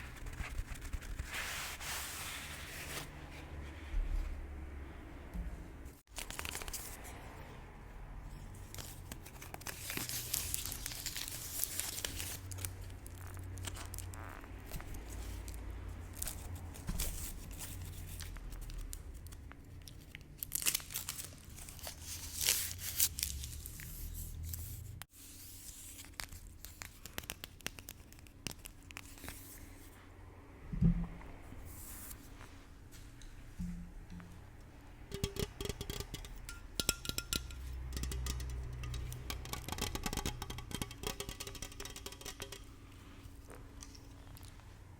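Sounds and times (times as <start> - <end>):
paper crinkling and tearing: 8.7 - 16.5, 17.1 - 29.7
short thump: 30.7 - 31.3.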